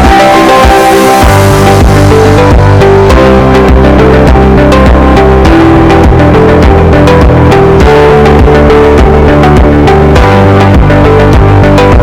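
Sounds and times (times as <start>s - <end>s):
background music with guitar and drums: 0.0s - 12.0s.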